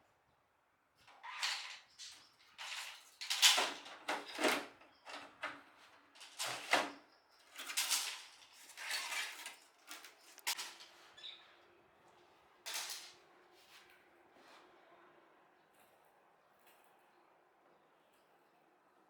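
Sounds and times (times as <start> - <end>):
scraping and rubbing of parts: 6.2 - 10.9.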